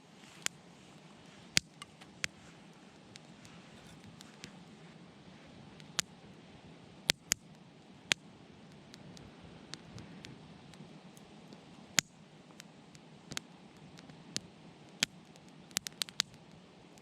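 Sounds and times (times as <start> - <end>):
wood fire crackling: 0.0 - 17.0.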